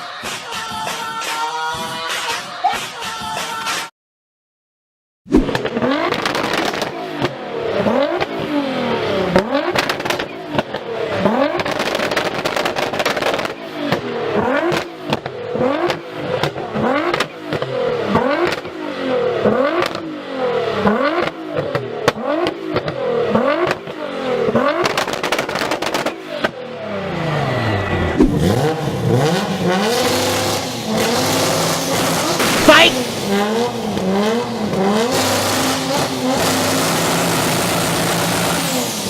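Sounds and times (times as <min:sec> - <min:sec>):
exhaust crackles and pops: 0:05.4 - 0:07.4, 0:09.4 - 0:18.8, 0:24.6 - 0:26.6
car engine revving: 0:05.5 - 0:39.0.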